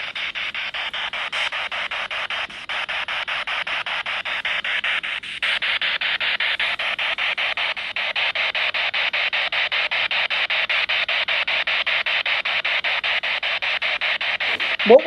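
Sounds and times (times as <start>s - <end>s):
pulsing radio static hiss: 0.0s - 15.0s.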